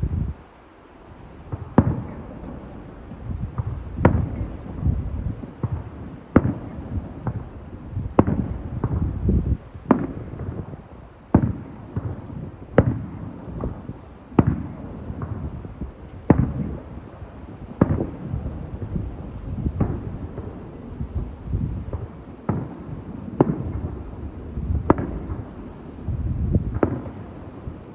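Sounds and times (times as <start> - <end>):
firework shells bursting: 26.6 - 27.9.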